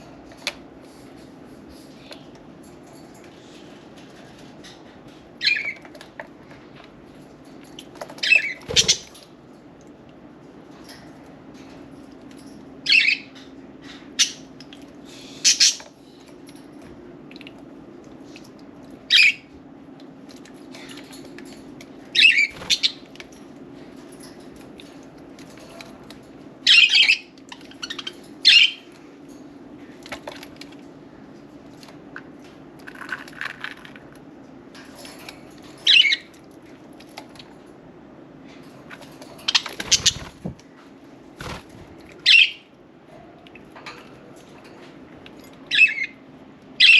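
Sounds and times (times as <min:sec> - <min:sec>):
budgerigars chirping and squawking: 0:05.4 - 0:05.8, 0:08.2 - 0:09.2, 0:12.9 - 0:13.2, 0:15.3 - 0:15.9, 0:22.2 - 0:23.0, 0:26.6 - 0:28.8, 0:39.5 - 0:40.3, 0:42.2 - 0:42.6, 0:45.7 - 0:46.2.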